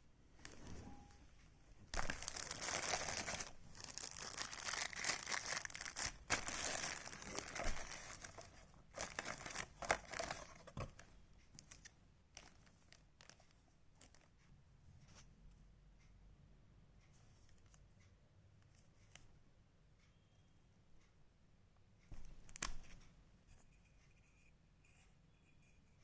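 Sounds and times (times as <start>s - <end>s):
packaging crinkling and rustling: 1.9s - 14.3s.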